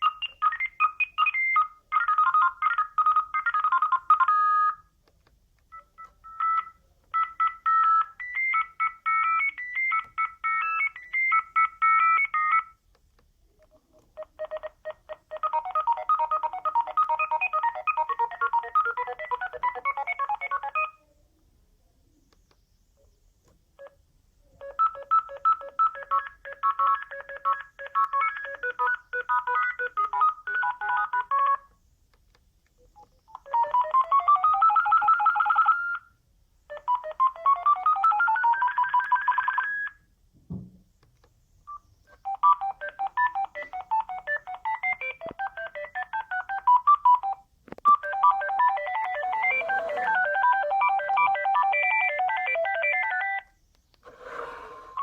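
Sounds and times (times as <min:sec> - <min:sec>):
electronic ringtone melodies: 0:00.0 - 0:04.8, 0:05.7 - 0:12.7, 0:14.2 - 0:21.0, 0:24.6 - 0:31.6, 0:33.4 - 0:36.1, 0:36.7 - 0:40.0, 0:42.2 - 0:53.5
soft knock: 0:40.4 - 0:40.9.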